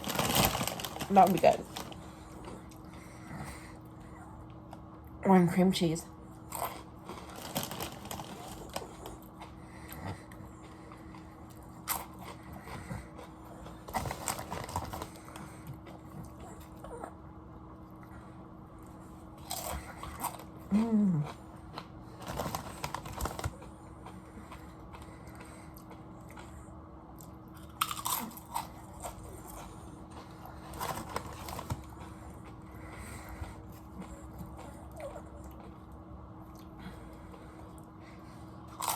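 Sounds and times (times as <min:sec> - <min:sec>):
chips being crunched: 0:27.8 - 0:28.7.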